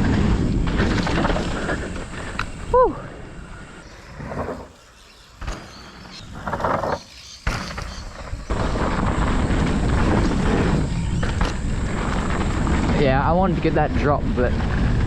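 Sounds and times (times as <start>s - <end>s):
bike tyre rumble: 0.0s - 15.0s
wind buffeting microphone: 7.5s - 15.0s.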